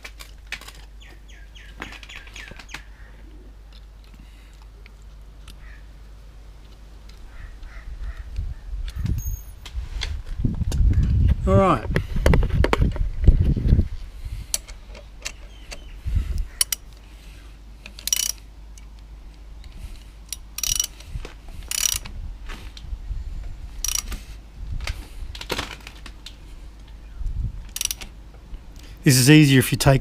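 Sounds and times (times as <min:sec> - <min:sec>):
low steady hum: 0:02.7 - 0:30.0
socket ratchet clicking: 0:16.6 - 0:16.9, 0:18.0 - 0:18.9, 0:20.3 - 0:21.0, 0:21.7 - 0:22.1, 0:23.8 - 0:24.2, 0:27.7 - 0:28.0.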